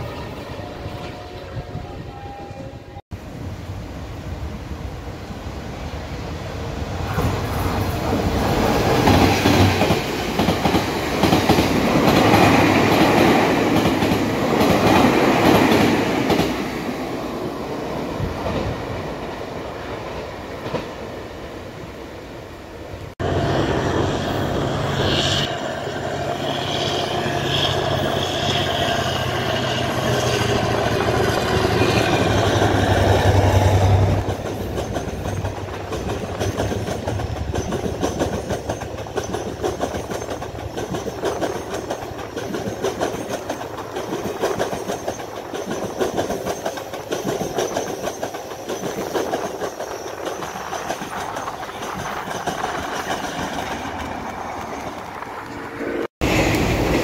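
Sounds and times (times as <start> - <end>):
diesel locomotive engine drone: 21.7 - 44.0, 51.4 - 57.0
train wheels clattering: 27.5 - 57.0.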